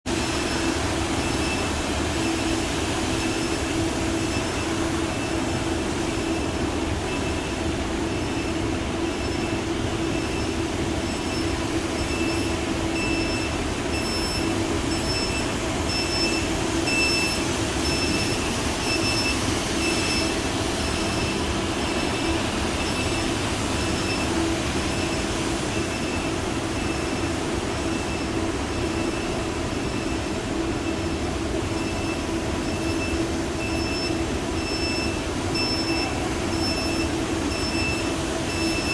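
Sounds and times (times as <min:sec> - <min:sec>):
floor scrubber mechanical drone: 0:00.1 - 0:38.9.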